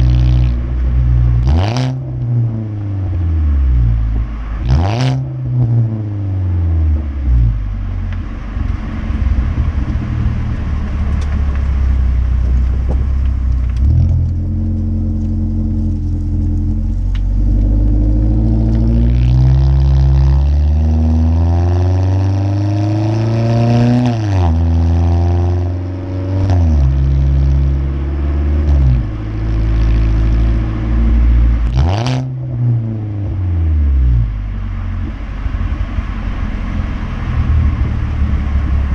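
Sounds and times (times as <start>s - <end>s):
car engine revving: 0.0s - 38.9s
exhaust pops: 7.4s - 20.9s.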